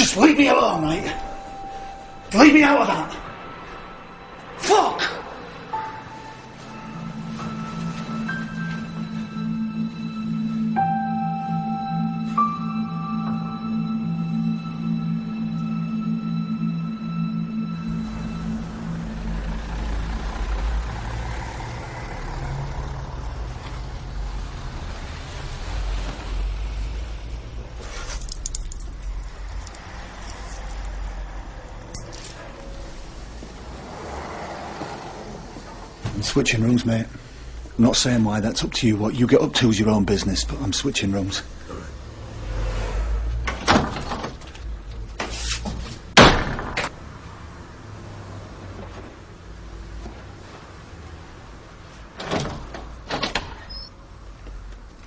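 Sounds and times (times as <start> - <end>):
vehicle engine rumbling: 5.2 - 53.1
door slamming shut: 43.5 - 44.4, 46.2 - 47.0.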